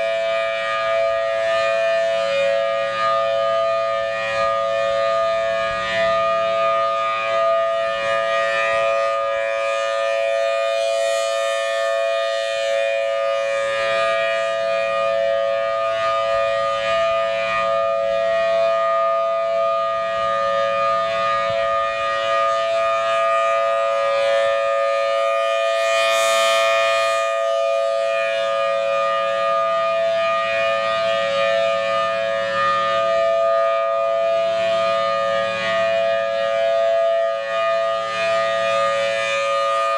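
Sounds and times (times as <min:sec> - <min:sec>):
warning siren two-note chord: 0:00.0 - 0:39.9.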